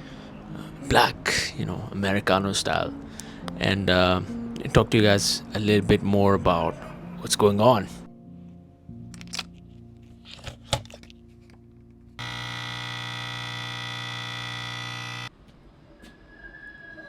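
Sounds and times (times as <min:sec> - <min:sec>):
coffee machine pump buzzing: 0:12.2 - 0:15.3.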